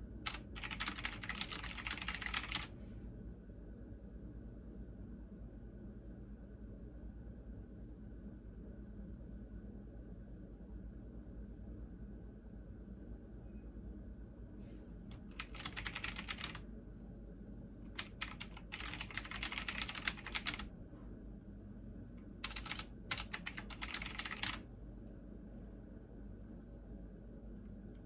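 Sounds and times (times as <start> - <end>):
steady low hum: 0.0 - 28.0
computer keyboard typing: 0.3 - 2.7, 15.1 - 16.6, 18.0 - 20.7, 22.4 - 24.6.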